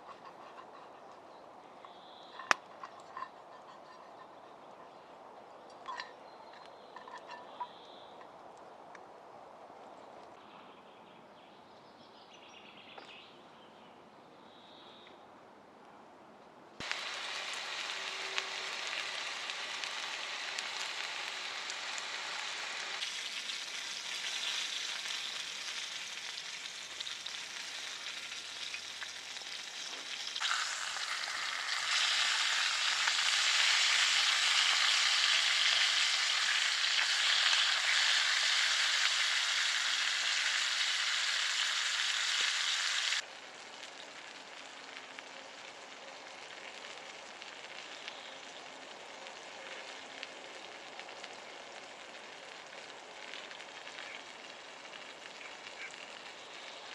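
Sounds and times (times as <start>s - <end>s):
food sizzling in a pan: 16.8s - 48.6s.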